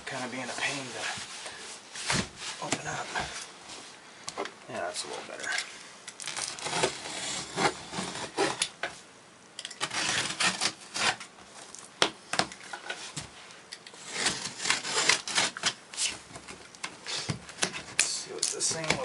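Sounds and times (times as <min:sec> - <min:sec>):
box packing scraping and rustling: 0:06.3 - 0:08.6.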